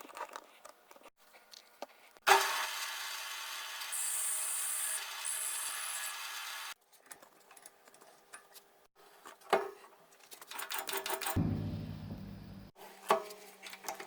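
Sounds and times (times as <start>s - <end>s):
sharp knock: 11.4s - 12.6s.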